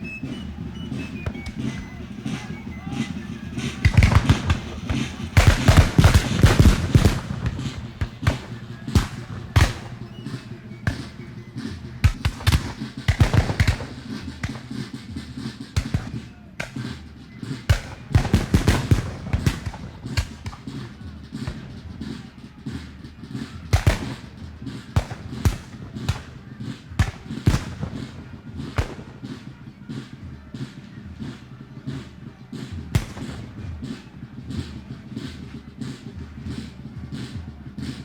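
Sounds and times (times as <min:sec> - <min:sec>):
automatic gunfire bursts: 0:01.0 - 0:15.2, 0:17.7 - 0:20.8, 0:23.3 - 0:30.0
single gunshots: 0:03.8 - 0:11.1.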